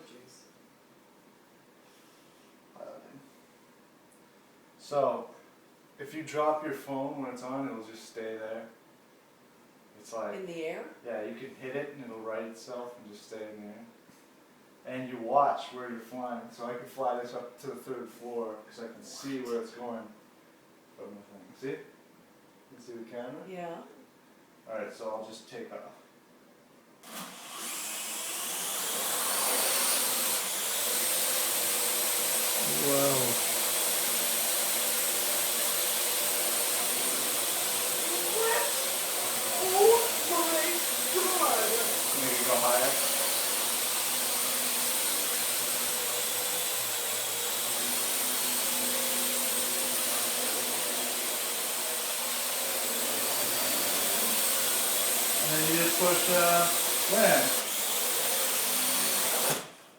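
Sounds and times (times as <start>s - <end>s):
drone motors whining: 27.5s - 59.6s.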